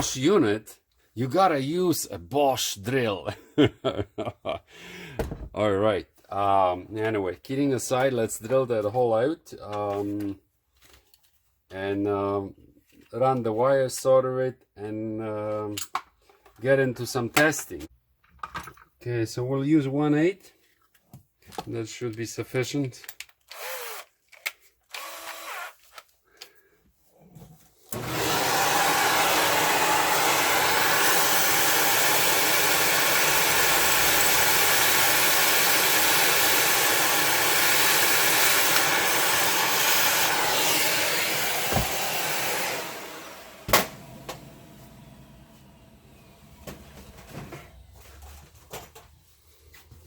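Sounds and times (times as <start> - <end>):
electric drill drilling: 23.5 - 24.1, 24.9 - 25.8, 27.9 - 47.3.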